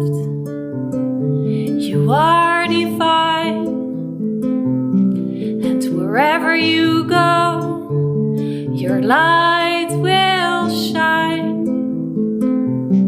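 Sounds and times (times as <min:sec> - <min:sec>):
plucked harp: 0:00.0 - 0:13.0
wordless singing voice: 0:01.8 - 0:03.7, 0:05.6 - 0:07.9, 0:08.7 - 0:11.6.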